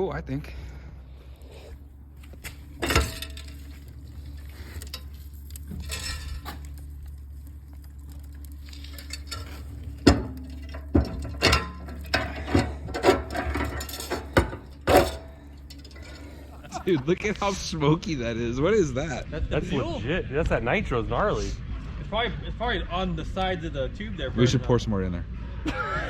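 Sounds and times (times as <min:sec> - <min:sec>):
steady low hum: 0:00.0 - 0:25.8
hard objects clinking and knocking: 0:02.3 - 0:16.7.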